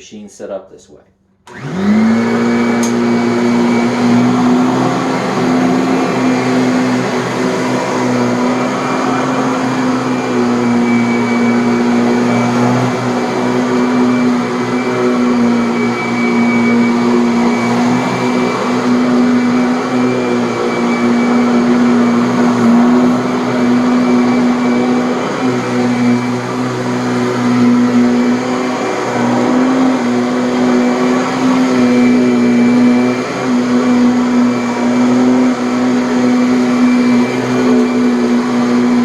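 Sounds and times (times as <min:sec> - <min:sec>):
vacuum cleaner running: 0:01.5 - 0:39.0.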